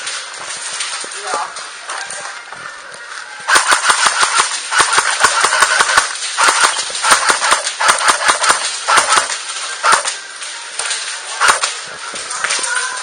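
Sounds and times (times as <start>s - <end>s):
airsoft guns firing bursts: 3.5s - 10.2s, 11.4s - 11.8s.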